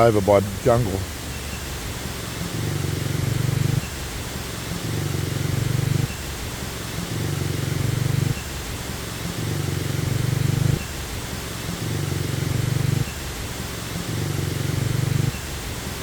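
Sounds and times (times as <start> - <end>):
waterfall rushing: 0.0 - 5.0
low pulsing buzz: 0.0 - 16.0.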